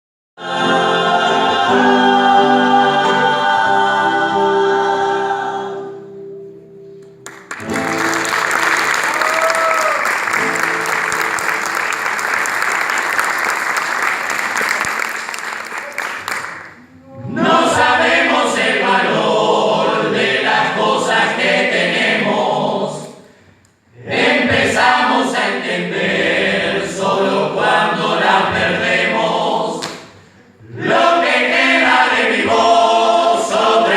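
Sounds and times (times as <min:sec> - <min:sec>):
choir singing: 0:00.4 - 0:06.3, 0:17.2 - 0:23.2, 0:23.9 - 0:33.9.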